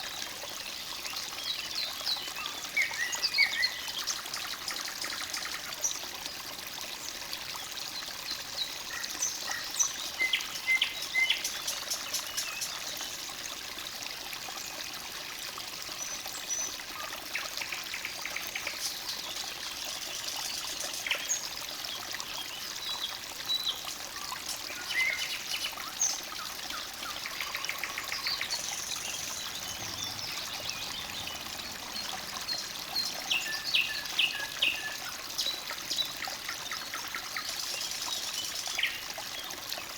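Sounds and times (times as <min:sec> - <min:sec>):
stream trickling: 0:00.0 - 0:39.9
songbirds singing and chirping: 0:00.6 - 0:06.0, 0:07.6 - 0:13.2, 0:17.4 - 0:39.9.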